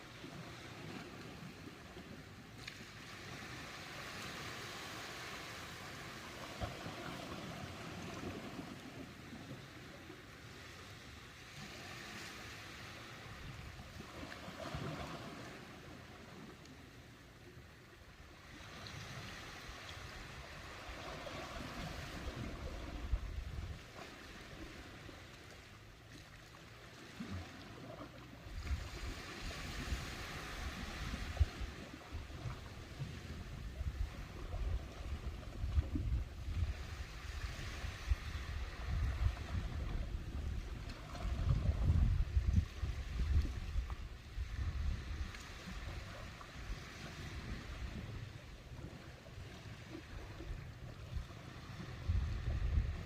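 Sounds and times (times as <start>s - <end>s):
ocean waves breaking: 0.0s - 53.0s
wind thumping on microphone: 28.5s - 48.3s, 51.1s - 53.0s.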